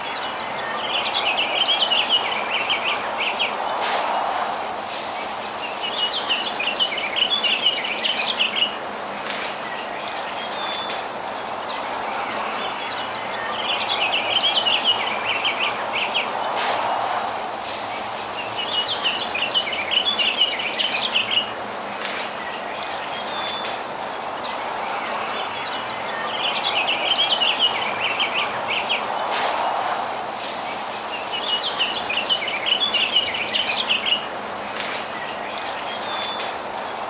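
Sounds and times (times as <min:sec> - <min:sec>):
outdoor ambience hum: 0:00.0 - 0:37.0
small songbirds chirping: 0:05.1 - 0:16.6, 0:17.9 - 0:29.6, 0:30.6 - 0:36.6.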